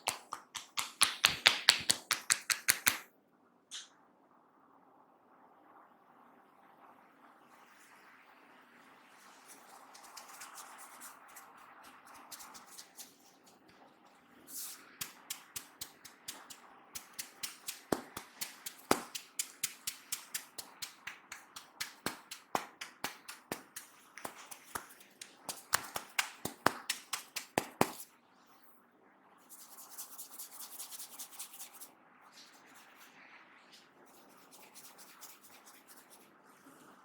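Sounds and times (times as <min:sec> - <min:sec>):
hand taps and slaps on head: 0:00.0 - 0:03.0, 0:15.0 - 0:28.0
soft rubbing: 0:09.2 - 0:28.1, 0:33.7 - 0:37.0.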